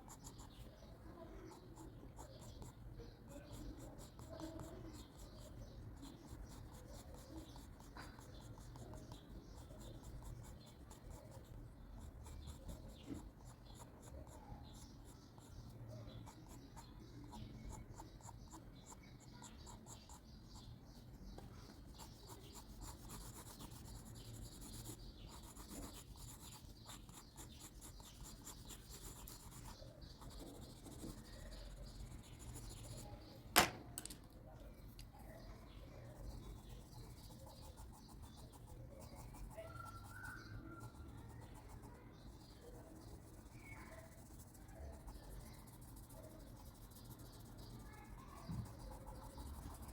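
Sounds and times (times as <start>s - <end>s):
pencil scratching on paper: 0.0s - 33.7s, 35.6s - 49.9s
sharp click: 33.5s - 35.1s.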